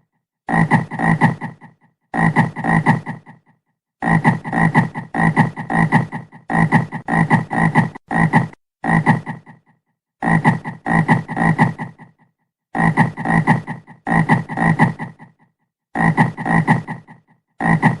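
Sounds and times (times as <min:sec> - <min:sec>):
frog croaking: 0:00.5 - 0:11.9, 0:16.0 - 0:18.0.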